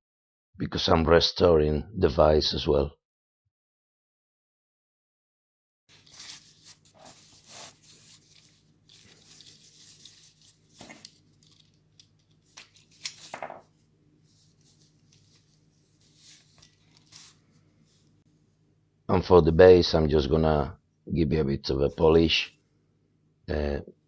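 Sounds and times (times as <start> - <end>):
scraping and rustling: 5.9 - 18.2.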